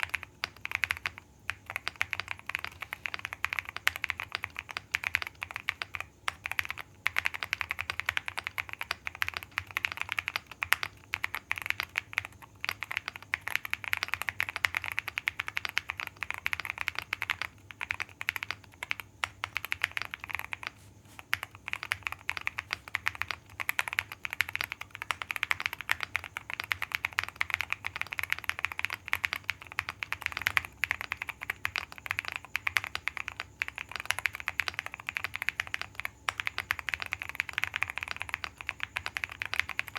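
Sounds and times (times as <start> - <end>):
mechanical keyboard typing: 0.0 - 39.9.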